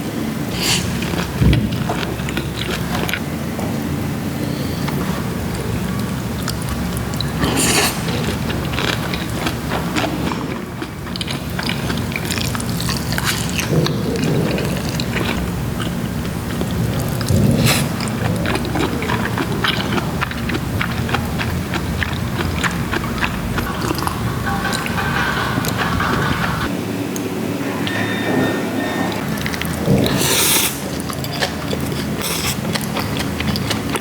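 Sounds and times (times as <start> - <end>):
person chewing: 0.5 - 3.2, 4.9 - 26.7, 29.2 - 34.0
low rumble: 13.7 - 30.2.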